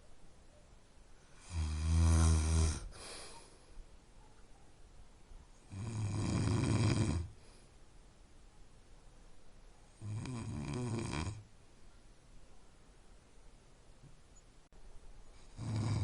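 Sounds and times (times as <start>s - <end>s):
person snoring: 1.3s - 3.2s, 5.7s - 7.4s, 10.0s - 11.4s, 15.4s - 16.0s.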